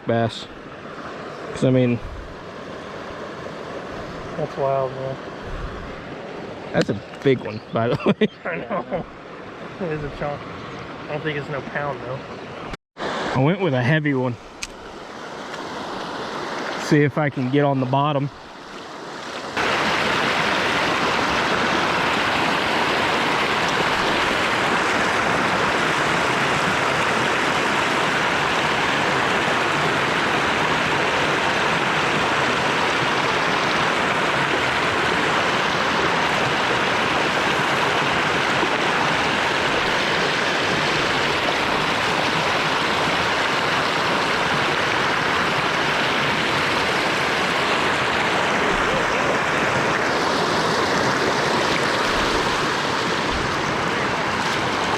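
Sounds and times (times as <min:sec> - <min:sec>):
creek water rushing: 0:00.0 - 0:54.9.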